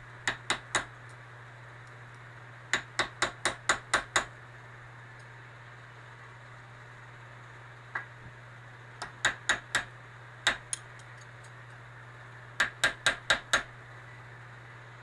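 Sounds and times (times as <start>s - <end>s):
hammer tapping on metal punch: 0.2s - 0.9s, 2.8s - 4.3s, 9.0s - 9.9s, 10.5s - 10.9s, 12.6s - 13.7s.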